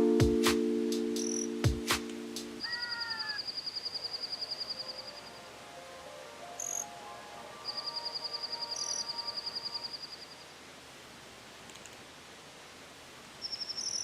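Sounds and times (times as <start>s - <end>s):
soft music: 0.0s - 2.6s, 4.7s - 9.9s
quiet hiss: 0.0s - 14.0s.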